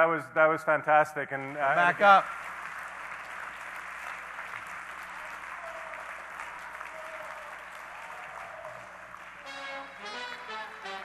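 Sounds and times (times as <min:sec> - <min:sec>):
audience applauding: 0:01.6 - 0:11.0
music: 0:09.3 - 0:11.0.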